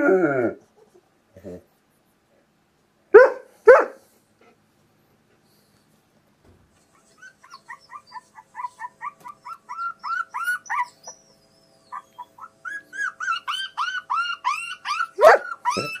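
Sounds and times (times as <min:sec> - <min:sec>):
dog barking: 0:03.1 - 0:04.0, 0:15.2 - 0:16.0
dog whining with high yelps: 0:06.9 - 0:16.0.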